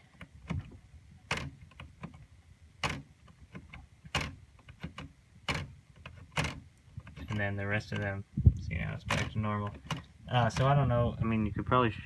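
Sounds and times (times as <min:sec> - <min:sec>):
typewriter lever clacks: 0:00.2 - 0:02.2, 0:02.8 - 0:08.1.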